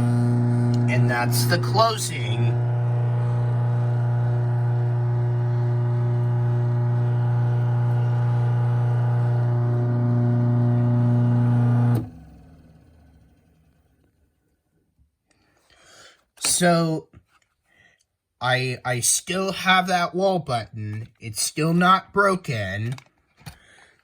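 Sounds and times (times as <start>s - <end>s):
garage door opener motor hum: 0.0s - 13.9s.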